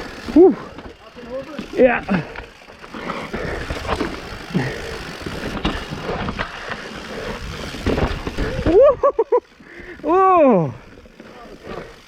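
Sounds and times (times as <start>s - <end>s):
bike rattling and knocking: 0.0s - 12.0s
tyres rumbling over dirt and rock: 0.2s - 8.9s.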